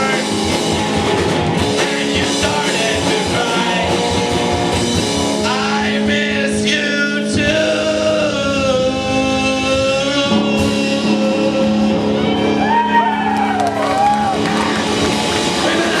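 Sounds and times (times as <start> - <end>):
wordless sung vocal: 0.0 - 0.7, 1.6 - 4.3, 5.4 - 12.2, 15.5 - 16.0
live rock band playing: 0.0 - 16.0.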